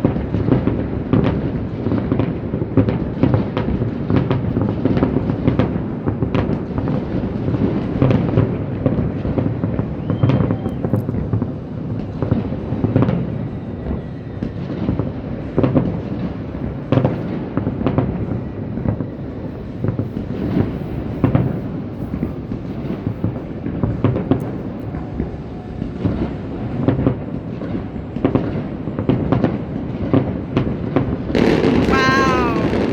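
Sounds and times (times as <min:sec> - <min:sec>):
distant fireworks rumble and bangs: 0:00.0 - 0:32.9.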